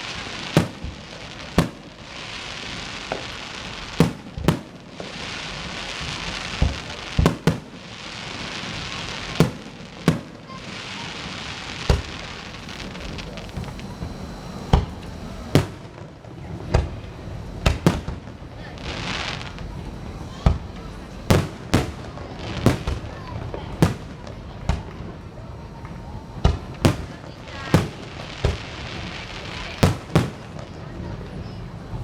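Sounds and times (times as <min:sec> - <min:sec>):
firework bangs: 0:00.0 - 0:31.6
fireworks crackling hiss: 0:00.0 - 0:32.0.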